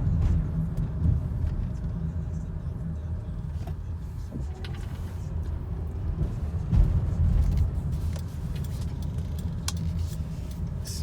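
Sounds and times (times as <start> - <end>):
vehicle road rumble from inside: 0.0 - 11.0.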